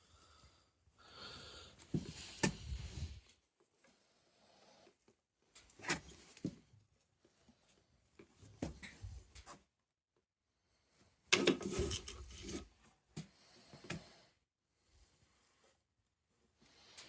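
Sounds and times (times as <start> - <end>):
knocks and clicks of handling: 11.3 - 12.6.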